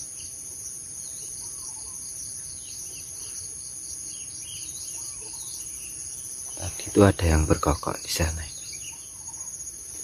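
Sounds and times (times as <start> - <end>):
faint bird chirps: 0.0 - 10.0
insects chorus: 0.0 - 10.0.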